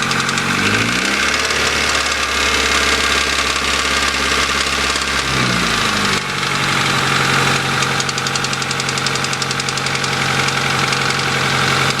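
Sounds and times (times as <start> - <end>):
engine ticking knock: 0.0 - 2.4, 7.8 - 12.0
car engine running: 0.0 - 12.0.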